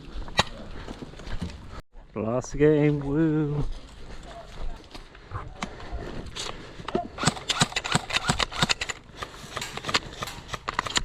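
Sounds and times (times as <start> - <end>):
footsteps: 0.0 - 11.0
sharp clicks and knocks of gear: 6.4 - 11.0.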